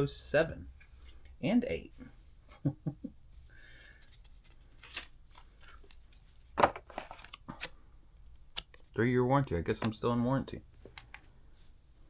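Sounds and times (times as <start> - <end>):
paper rustling and crackling: 3.8 - 7.8.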